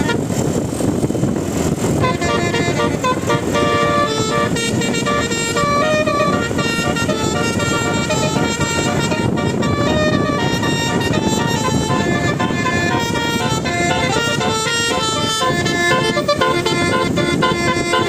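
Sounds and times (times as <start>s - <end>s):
bus horn playing melody: 0.0s - 0.6s, 1.9s - 18.0s
engine noise: 0.0s - 18.0s
crowd noise: 10.6s - 18.0s.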